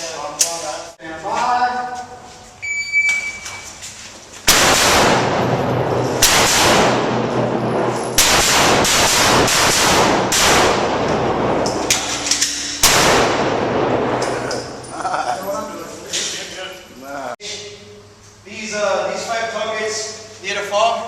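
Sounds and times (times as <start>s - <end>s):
pistol shots with echo: 4.5s - 14.8s.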